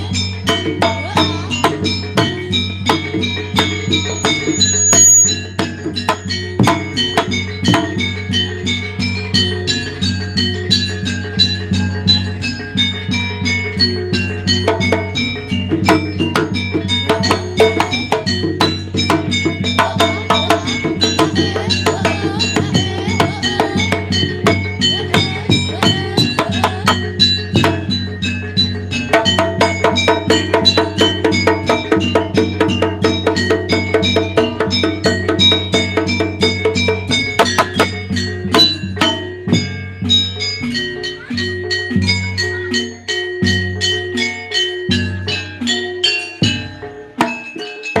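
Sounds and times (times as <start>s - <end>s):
drumming: 0.0s - 48.0s
metal gamelan strikes: 0.0s - 48.0s.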